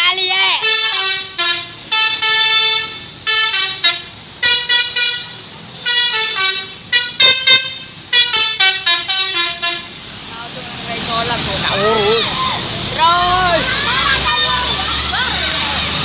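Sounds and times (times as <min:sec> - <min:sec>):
multi-tone bus horn tune: 0:00.6 - 0:10.0.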